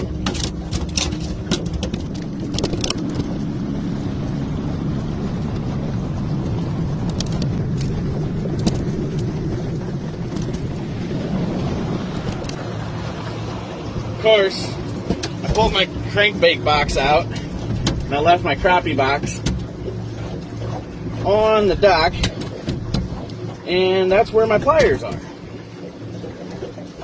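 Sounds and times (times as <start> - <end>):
boat motor rumble: 0.0 - 27.0.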